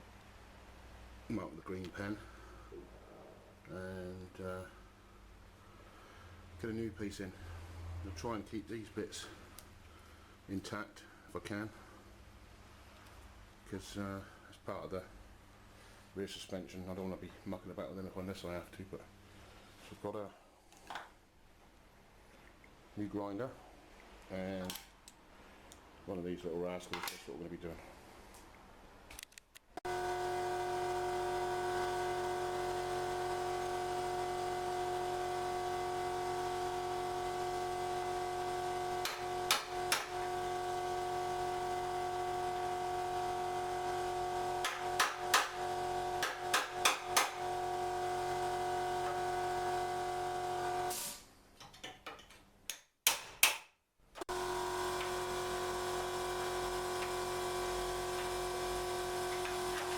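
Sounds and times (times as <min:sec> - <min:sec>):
angle grinder whining: 0:29.8 - 0:51.0, 0:54.2 - 0:59.9.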